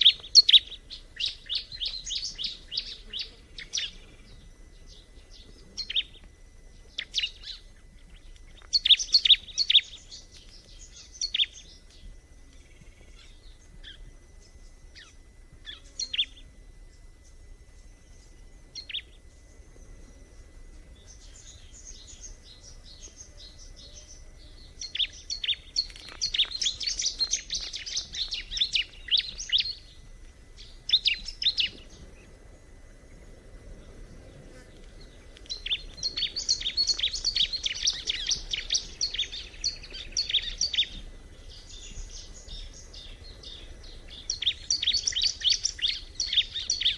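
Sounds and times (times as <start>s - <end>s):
bird chirping song: 0.0s - 46.9s.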